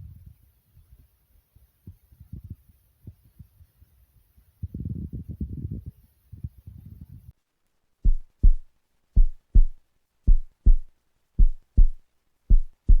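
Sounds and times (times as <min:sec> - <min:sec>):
low throbbing rumble: 0:08.0 - 0:08.6
heartbeat thumps: 0:08.0 - 0:13.0.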